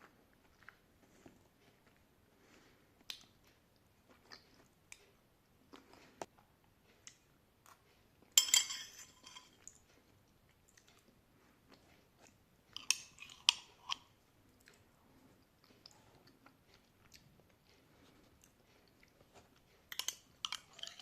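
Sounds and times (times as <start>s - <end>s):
crunchy food chewing: 10.5s - 21.0s.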